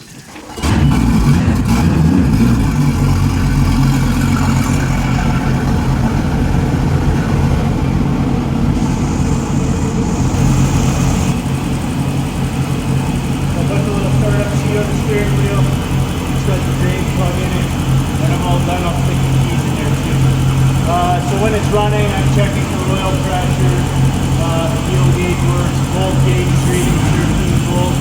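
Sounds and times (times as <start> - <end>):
boat engine idling: 0.0 - 28.0.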